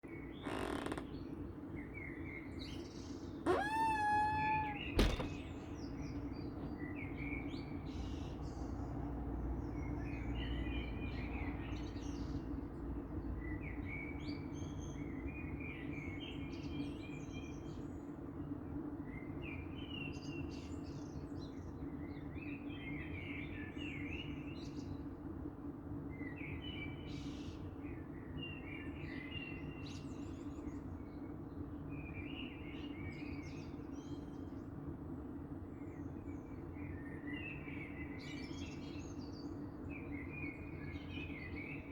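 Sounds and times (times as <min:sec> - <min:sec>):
songbirds singing: 0:00.1 - 0:18.5, 0:35.7 - 0:41.9.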